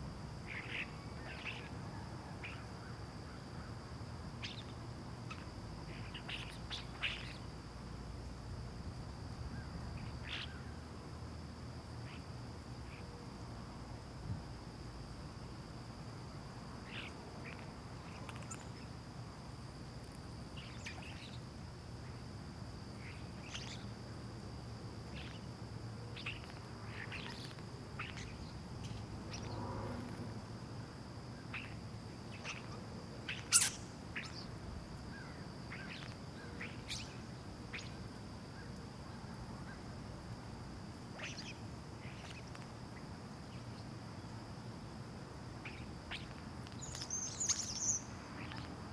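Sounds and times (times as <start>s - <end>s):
small birds chirping: 0.4s - 1.8s, 4.4s - 7.5s, 9.5s - 10.8s, 16.8s - 19.0s, 20.5s - 22.2s, 22.9s - 24.0s, 25.1s - 29.6s, 31.3s - 38.0s, 41.2s - 44.3s, 45.6s - 48.8s.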